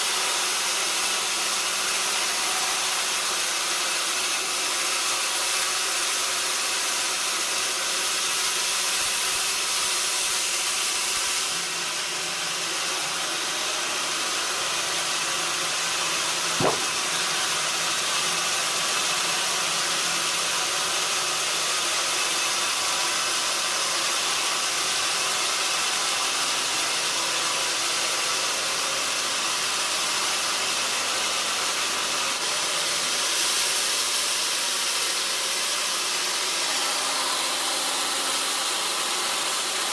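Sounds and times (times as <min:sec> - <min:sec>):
saw cutting a log: 0:00.0 - 0:39.9
sharp click: 0:16.6 - 0:17.0.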